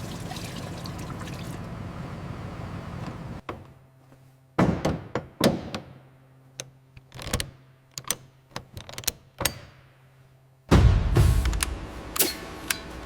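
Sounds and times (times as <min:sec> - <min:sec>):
sharp knocks and clunks: 0:04.6 - 0:06.0.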